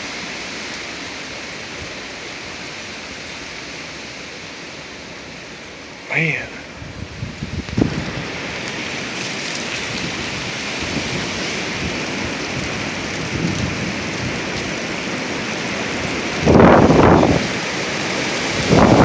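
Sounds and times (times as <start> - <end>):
strong gusty wind rushing: 6.1 - 19.0
wind gust buffeting microphone: 6.5 - 9.0, 9.8 - 19.0.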